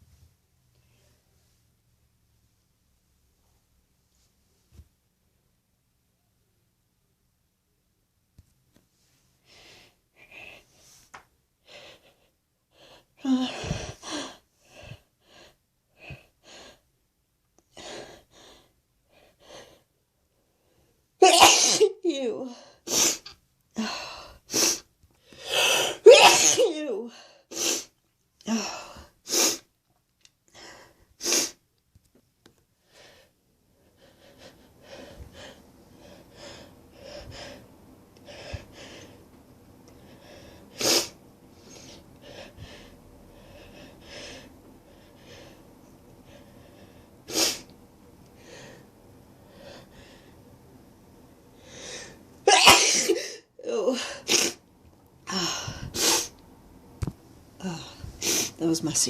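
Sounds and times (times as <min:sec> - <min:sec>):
woman sniffing and breathing: 0:09.4 - 0:16.9, 0:30.5 - 0:31.6, 0:55.3 - 0:56.4, 0:57.6 - 0:58.6
woman sneezing: 0:21.2 - 0:23.3, 0:25.8 - 0:27.0, 0:52.5 - 0:54.6.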